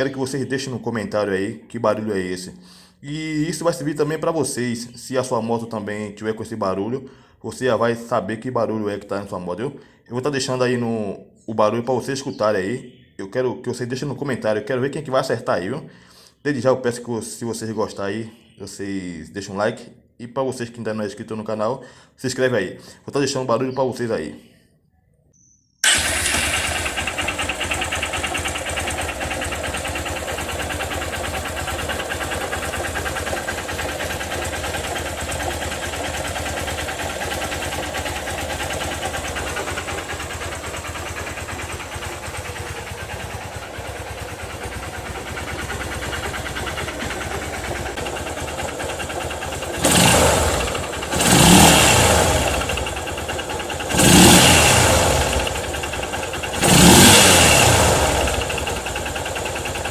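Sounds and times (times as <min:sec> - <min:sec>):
motorcycle engine idling: 0:25.8 - 0:59.9
motorcycle engine revving: 0:25.8 - 0:59.9.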